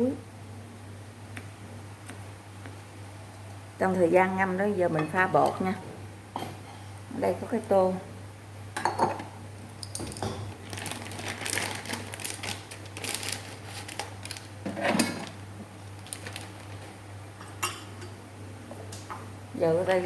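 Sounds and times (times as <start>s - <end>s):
kitchenware clattering: 8.8s - 9.3s, 17.4s - 18.2s
packaging rustling: 10.5s - 17.0s.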